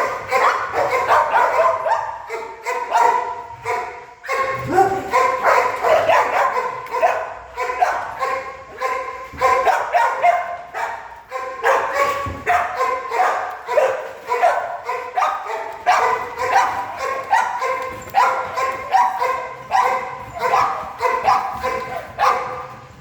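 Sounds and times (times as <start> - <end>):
dogs barking: 0.0 - 23.0
dog yips: 11.4 - 22.6.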